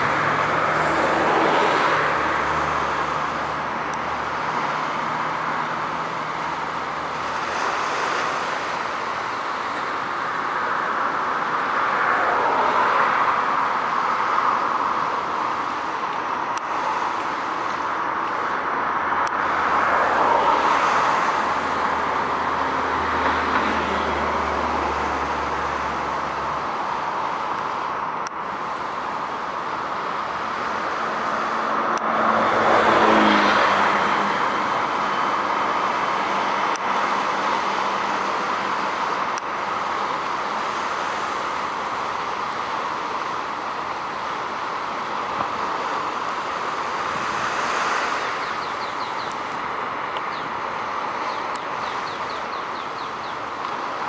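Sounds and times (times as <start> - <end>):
vehicle passing by: 0.0 - 8.7, 30.5 - 39.1
road traffic noise: 0.0 - 54.0.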